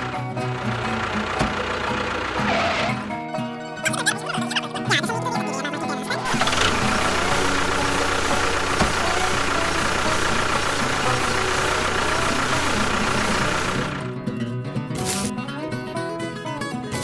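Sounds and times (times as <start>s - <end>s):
small motor whining: 0.0s - 3.2s, 5.9s - 14.2s.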